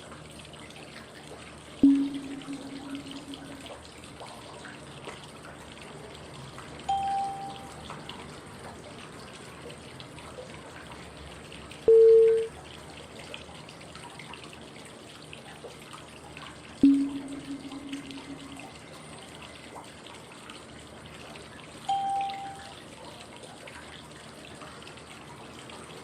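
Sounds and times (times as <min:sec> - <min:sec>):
short pitched cue tones: 0:01.8 - 0:03.7, 0:06.9 - 0:07.8, 0:11.9 - 0:12.5, 0:16.8 - 0:18.7, 0:21.9 - 0:22.7
flowing water white noise: 0:06.8 - 0:07.9, 0:21.8 - 0:22.8.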